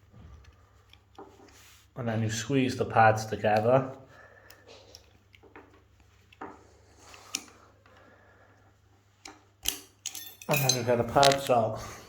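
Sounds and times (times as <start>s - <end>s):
faint handling noise: 0.0s - 2.4s, 8.8s - 12.0s
sharp metal clicks: 9.6s - 11.6s.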